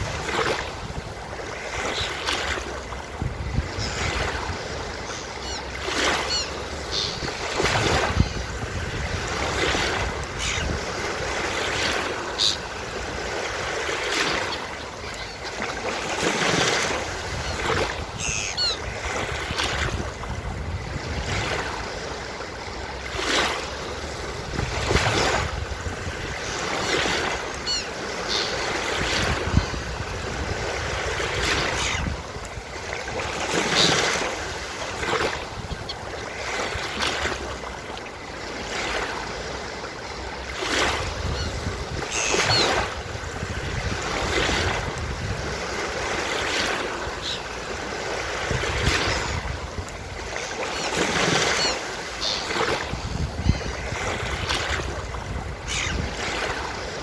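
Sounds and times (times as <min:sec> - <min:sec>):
waves breaking on beach: 0:00.0 - 0:57.0
seagull calls: 0:05.0 - 0:08.5, 0:10.3 - 0:10.9, 0:12.2 - 0:12.8, 0:14.2 - 0:15.7, 0:17.3 - 0:18.9, 0:27.5 - 0:29.8, 0:31.5 - 0:32.2, 0:33.5 - 0:34.2, 0:41.2 - 0:43.0, 0:47.1 - 0:47.5, 0:50.4 - 0:53.8, 0:55.6 - 0:56.4.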